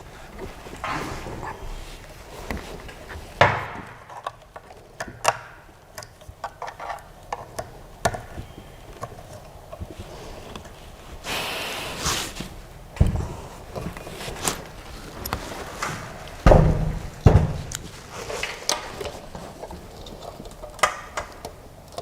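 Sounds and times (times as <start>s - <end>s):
clicks and knocks of parts: 2.4s - 10.8s, 13.0s - 22.0s
packaging rustle: 6.2s - 22.0s
heavy thump: 13.0s - 13.5s, 16.4s - 17.7s.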